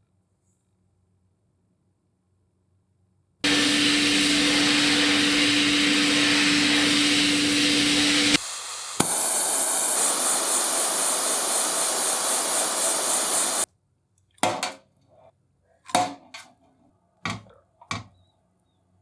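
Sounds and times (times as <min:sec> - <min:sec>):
machine rushing hiss: 0:03.4 - 0:13.7.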